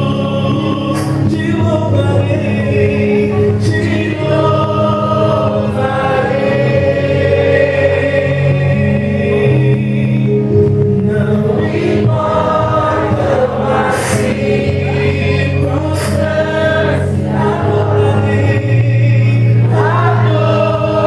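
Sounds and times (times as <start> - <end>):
instrumental accompaniment: 0.0 - 21.0
voices singing together: 0.0 - 21.0.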